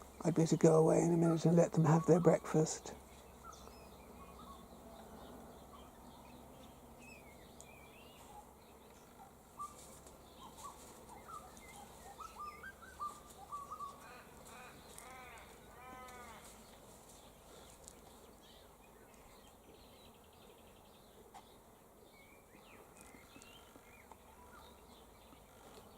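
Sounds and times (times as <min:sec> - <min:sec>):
low steady background hiss: 0:00.0 - 0:25.9
faint bird calls: 0:01.3 - 0:20.6.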